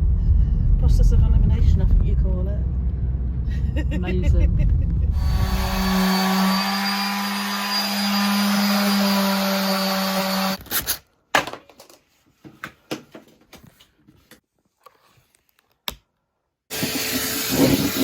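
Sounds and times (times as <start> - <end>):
power sander on wood: 5.2 - 10.6, 16.7 - 18.0.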